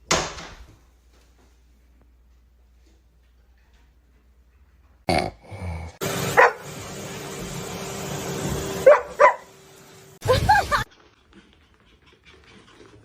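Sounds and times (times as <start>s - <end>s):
dog barking: 6.4s - 6.6s, 8.8s - 9.5s
sudden burst of noise: 10.2s - 10.9s.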